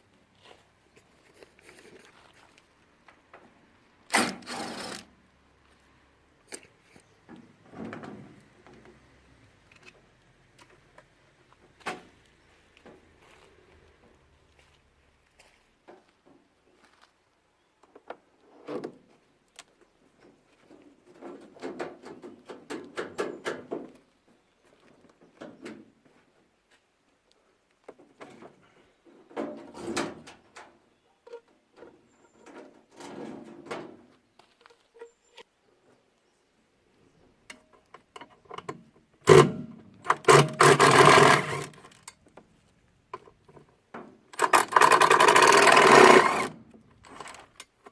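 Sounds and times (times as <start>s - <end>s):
rasping rattling: 39.3s - 42.1s, 44.4s - 47.6s
tools and parts clicking: 40.0s - 42.3s, 44.3s - 47.9s.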